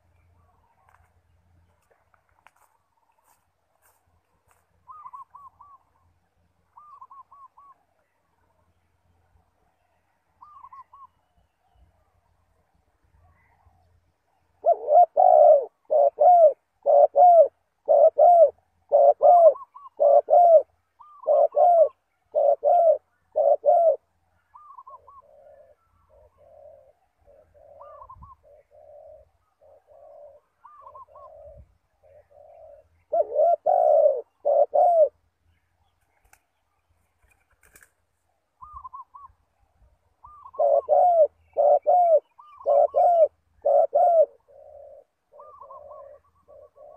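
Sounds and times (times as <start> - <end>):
dove cooing: 4.8 - 7.9, 10.4 - 11.2, 13.2 - 35.2, 38.6 - 39.4, 40.2 - 46.9.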